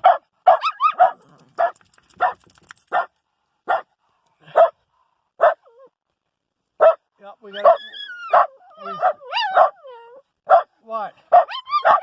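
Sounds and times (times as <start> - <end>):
dogs barking: 0.0 - 3.1, 3.7 - 3.9, 4.5 - 4.8, 5.4 - 5.8, 6.8 - 9.8, 10.4 - 12.0.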